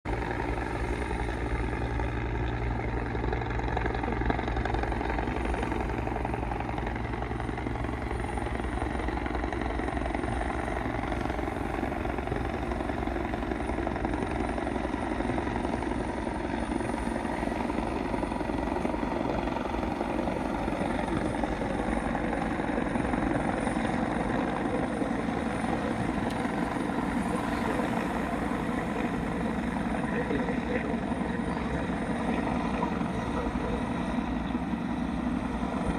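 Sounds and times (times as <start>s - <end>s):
helicopter rotor drone: 0.0s - 35.9s.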